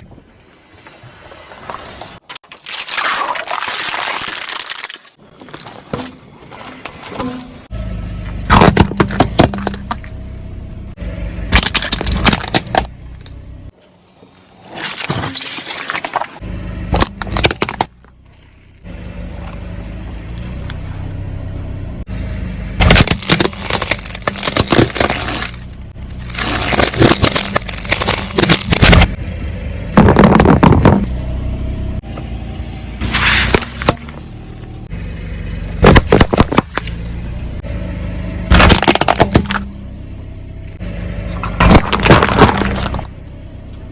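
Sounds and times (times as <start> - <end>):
tyre crushing brittle objects: 2.4 - 7.6, 8.4 - 10.2, 11.5 - 13.4, 14.7 - 18.6, 22.8 - 29.2, 35.8 - 37.0, 38.5 - 39.7, 41.4 - 43.1
car engine humming: 5.2 - 43.9.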